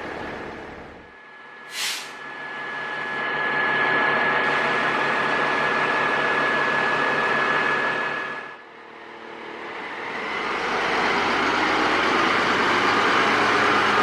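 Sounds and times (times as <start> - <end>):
diesel engine running: 0.0 - 14.0
air brake hiss: 1.7 - 2.2.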